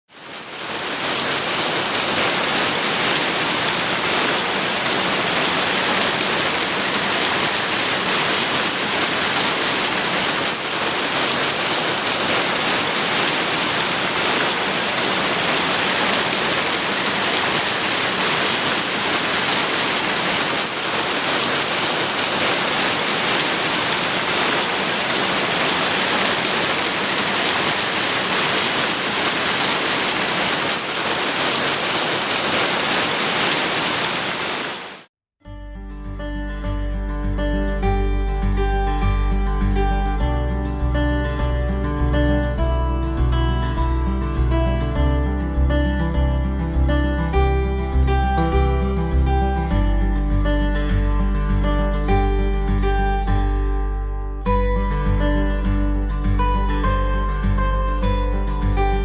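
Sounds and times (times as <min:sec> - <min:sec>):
water rushing: 0:00.1 - 0:35.1.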